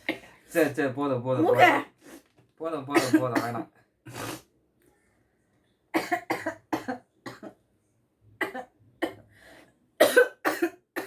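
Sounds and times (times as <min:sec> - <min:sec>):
person coughing: 0:10.0 - 0:11.0.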